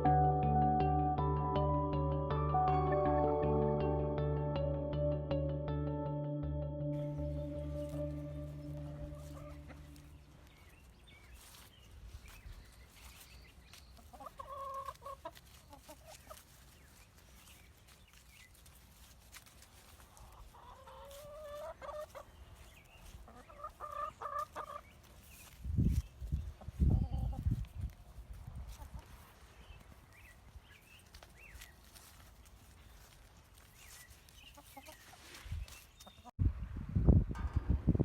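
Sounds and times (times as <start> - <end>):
soft music: 0.0 - 10.6
chickens clucking: 7.7 - 10.7, 13.8 - 17.0, 19.5 - 28.0, 28.6 - 29.8, 33.8 - 36.3
drawn-out chicken calls: 13.9 - 17.9, 19.4 - 27.6, 31.0 - 36.3.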